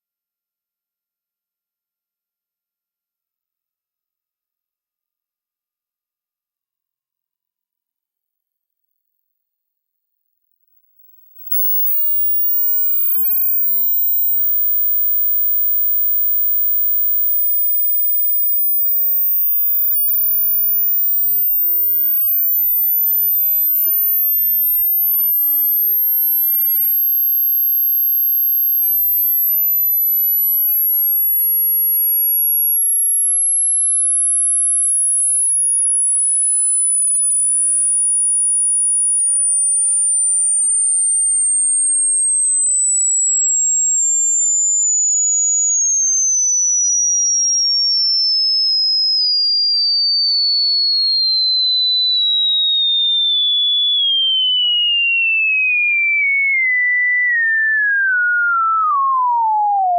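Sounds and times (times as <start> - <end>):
high pure test tone: 11.4 - 27.0.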